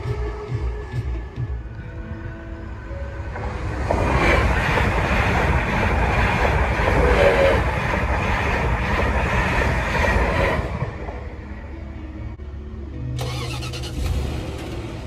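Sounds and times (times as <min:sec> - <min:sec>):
train wheels clattering over rails: 0:03.4 - 0:11.2.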